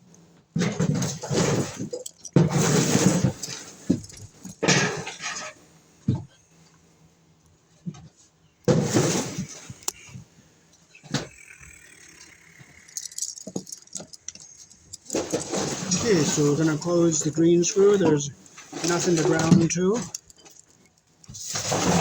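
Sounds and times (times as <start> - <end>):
metal parts clinking and rattling: 1.0 - 5.5, 10.9 - 22.0
rustling: 7.7 - 22.0.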